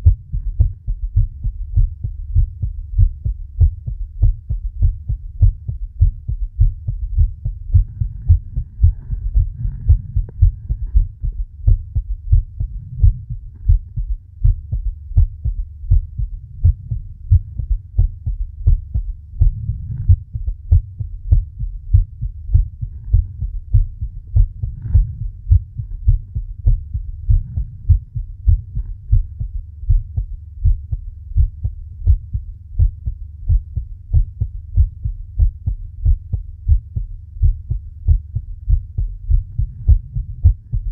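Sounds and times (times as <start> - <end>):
heartbeat thumps: 0.0 - 40.9
soft breathing: 6.9 - 14.2, 16.2 - 20.9, 38.7 - 40.9.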